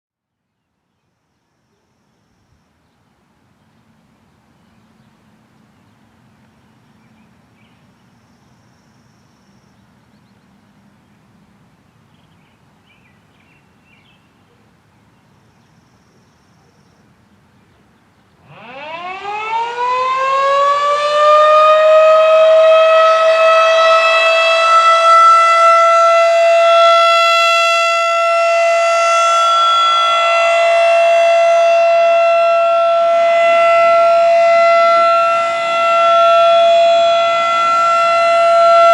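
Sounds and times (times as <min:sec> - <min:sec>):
outdoor warning siren: 0:18.4 - 0:38.9.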